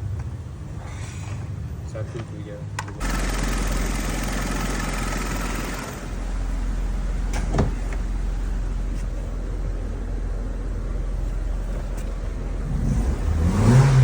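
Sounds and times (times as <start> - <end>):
car engine idling: 3.0 - 14.0.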